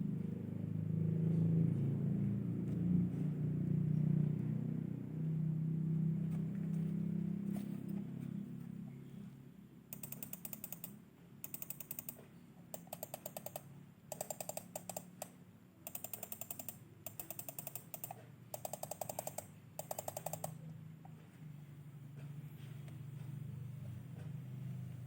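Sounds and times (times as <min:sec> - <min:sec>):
mouse scroll wheel clicks: 0:09.9 - 0:20.6.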